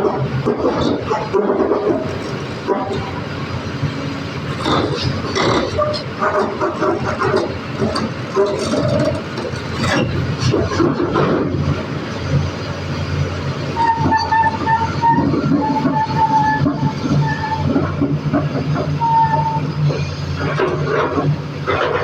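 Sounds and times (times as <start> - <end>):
excavator diesel hum: 0.0 - 22.0
high squealing tone: 13.8 - 17.9.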